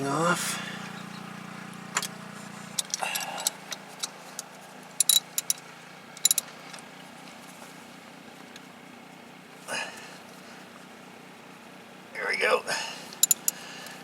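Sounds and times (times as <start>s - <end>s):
metallic clicks and clinks: 2.8s - 5.6s, 6.2s - 6.5s, 13.2s - 13.6s.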